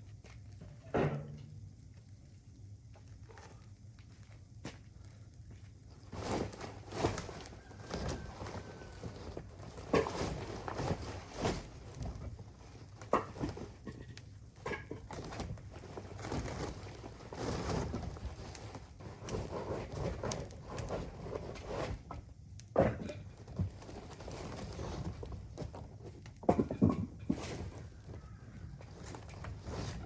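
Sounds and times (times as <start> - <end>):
rustling: 2.2 - 22.2, 23.3 - 30.0.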